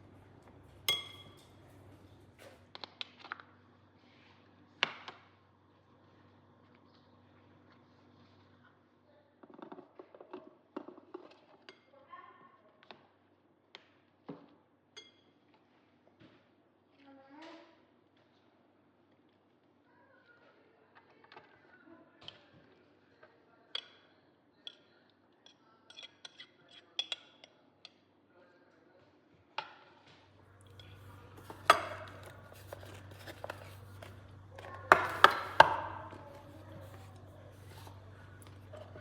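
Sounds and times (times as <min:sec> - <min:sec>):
dishes and utensils clinking: 0:00.0 - 0:02.6, 0:30.5 - 0:39.0
low steady hum: 0:00.0 - 0:02.8, 0:30.2 - 0:39.0.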